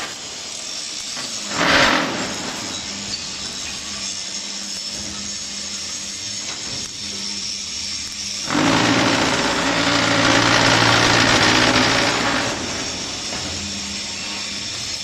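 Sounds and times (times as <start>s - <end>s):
vibrating table rattling buzz: 1.5s - 3.5s, 8.4s - 14.9s
machine running hum: 8.4s - 14.9s.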